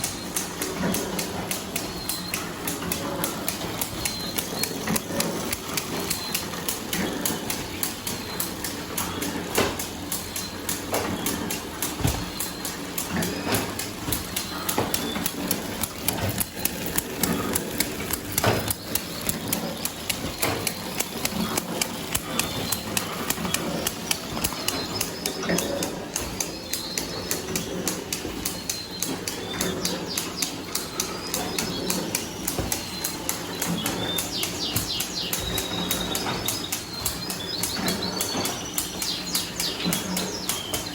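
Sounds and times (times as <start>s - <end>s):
machine knocks: 0.0s - 40.9s
packaging machine clattering: 0.0s - 40.9s.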